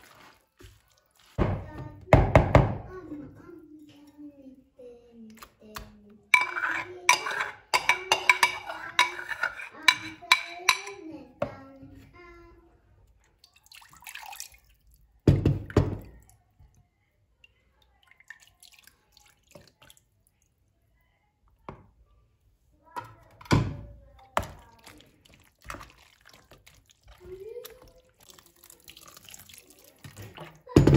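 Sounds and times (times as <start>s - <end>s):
dishes and utensils clinking: 6.3s - 11.5s, 30.0s - 30.9s.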